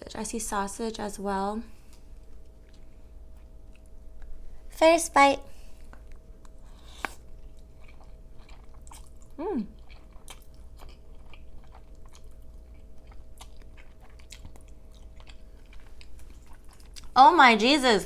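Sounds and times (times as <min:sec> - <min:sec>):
wet mouth chewing sounds: 0:05.8 - 0:17.2
person humming mm: 0:09.4 - 0:09.8.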